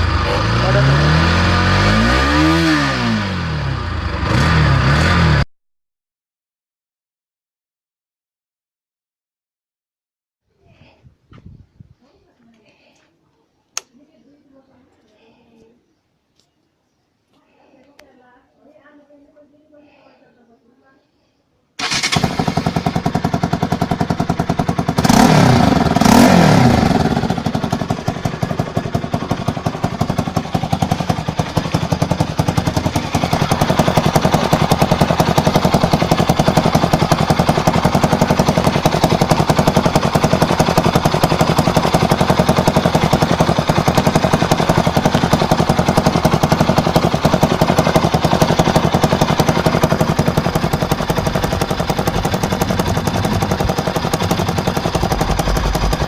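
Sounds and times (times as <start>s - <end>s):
motorcycle engine idling and revving: 0.0s - 5.5s, 21.8s - 56.0s.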